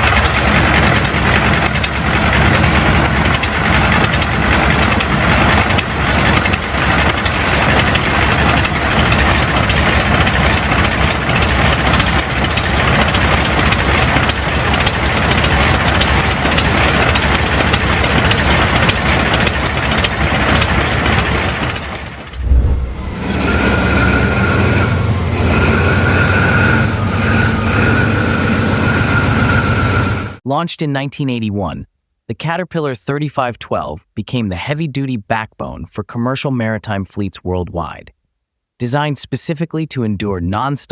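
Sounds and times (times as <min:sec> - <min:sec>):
big diesel engine droning: 0:00.0 - 0:30.4
radial diesel engine clattering: 0:00.0 - 0:30.4.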